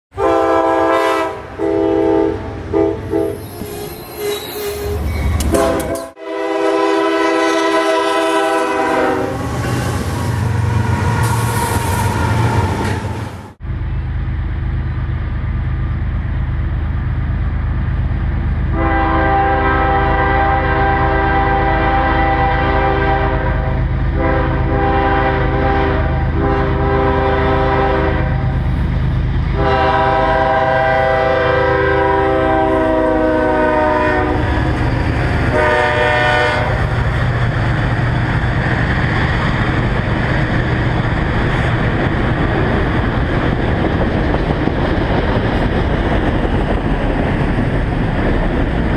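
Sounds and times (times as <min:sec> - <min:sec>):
locomotive air horn blasts: 0:00.1 - 0:09.8, 0:18.7 - 0:28.6, 0:29.5 - 0:34.6, 0:35.5 - 0:36.9
freight cars rumbling past: 0:08.8 - 0:18.9.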